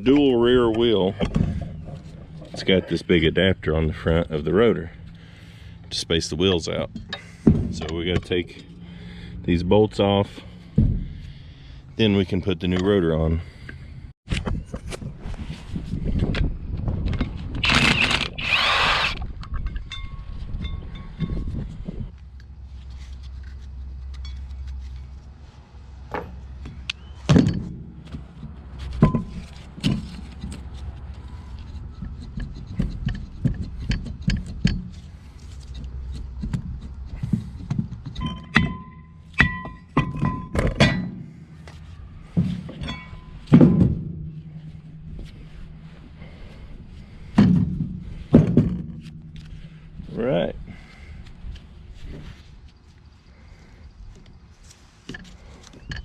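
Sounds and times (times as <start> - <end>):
metal clanks and knocks: 0.0 - 3.3, 6.7 - 8.7, 19.4 - 21.8, 26.0 - 49.9.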